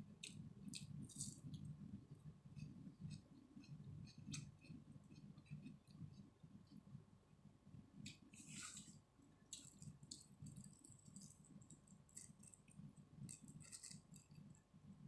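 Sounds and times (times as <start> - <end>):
close chewing with wet smacks: 2.5 - 6.8.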